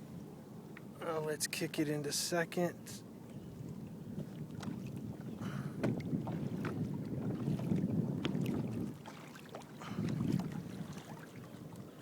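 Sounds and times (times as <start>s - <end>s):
water rushing along kayak hull: 0.0s - 12.0s
wind on microphone: 3.3s - 12.0s.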